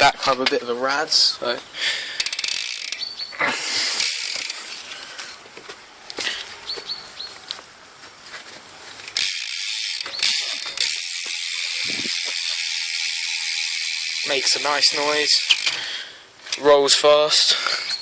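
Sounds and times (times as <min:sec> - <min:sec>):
bike hub ratcheting: 0:02.1 - 0:03.2, 0:03.8 - 0:04.8, 0:09.1 - 0:16.7.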